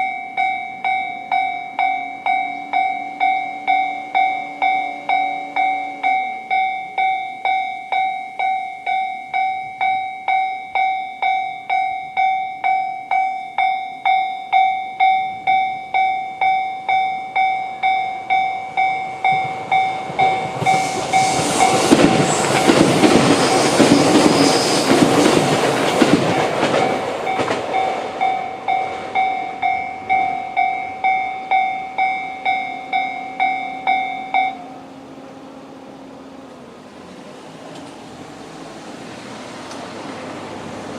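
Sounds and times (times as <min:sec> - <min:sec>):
level-crossing bell ringing: 0:00.0 - 0:22.8, 0:26.3 - 0:34.8
train passing on rails: 0:00.0 - 0:40.9.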